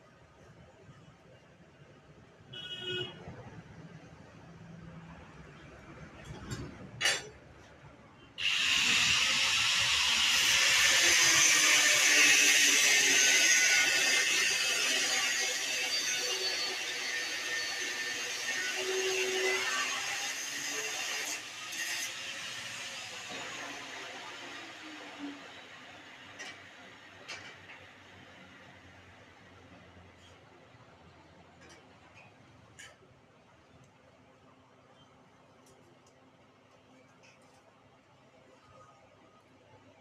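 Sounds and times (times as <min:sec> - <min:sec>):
power tool hissing on steel: 0:08.4 - 0:25.6.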